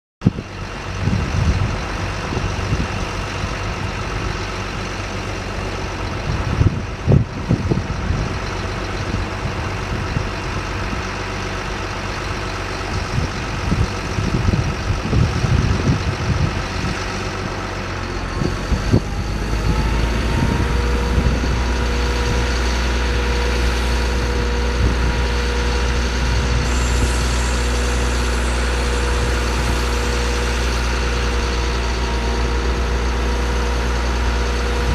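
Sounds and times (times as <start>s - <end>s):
truck engine idling: 0.2s - 34.9s
steady whine: 2.0s - 34.9s.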